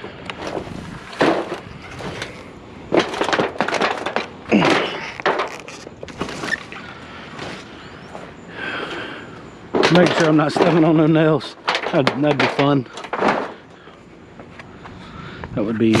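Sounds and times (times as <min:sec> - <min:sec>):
sheet metal crunching and clanking: 0:00.4 - 0:06.6, 0:09.7 - 0:13.9.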